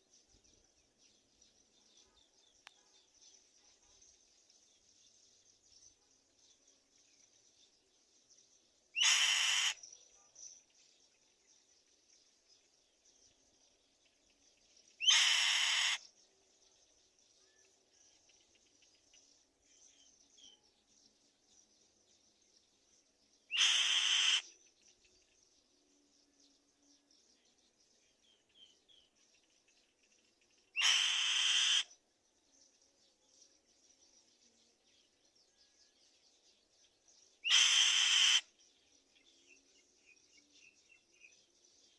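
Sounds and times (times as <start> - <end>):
bird harsh screech: 9.0 - 9.8, 15.0 - 16.0, 23.6 - 24.4, 30.8 - 31.9, 37.5 - 38.4.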